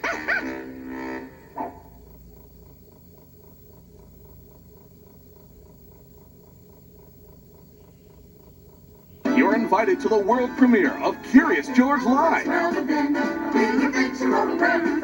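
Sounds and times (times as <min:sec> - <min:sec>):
faint hum and hiss: 0:00.0 - 0:15.0
soft ticking: 0:01.7 - 0:15.0.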